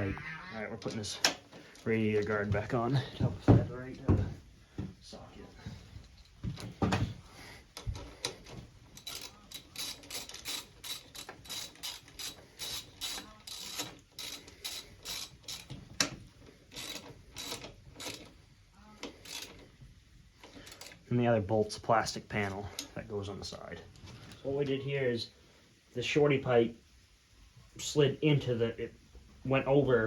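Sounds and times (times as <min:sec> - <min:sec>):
socket ratchet clicking: 0:16.8 - 0:18.3.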